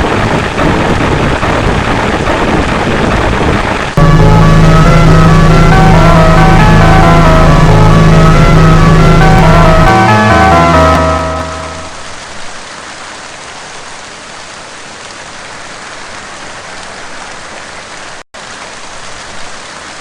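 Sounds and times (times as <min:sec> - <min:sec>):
steady rain hiss: 0:00.0 - 0:20.0
music: 0:04.0 - 0:11.9.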